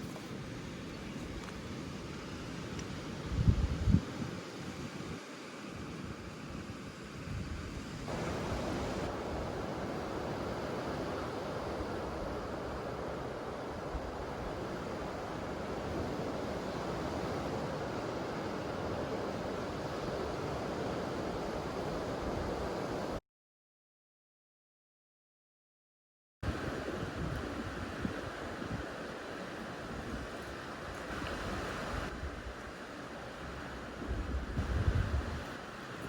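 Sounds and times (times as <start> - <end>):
surf washing onto beach: 0.0 - 23.2, 26.4 - 36.0
wind rumbling on microphone: 2.8 - 5.2, 7.1 - 23.2, 26.5 - 29.0, 33.4 - 36.0.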